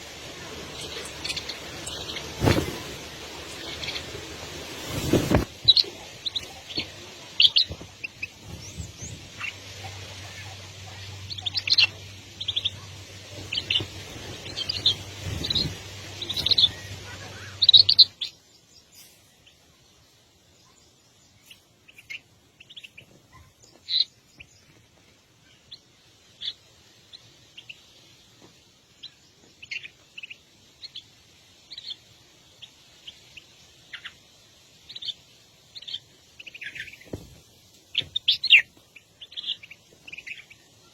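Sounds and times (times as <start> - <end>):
steady low hum: 0.0 - 22.8
small birds chirping: 0.0 - 40.9.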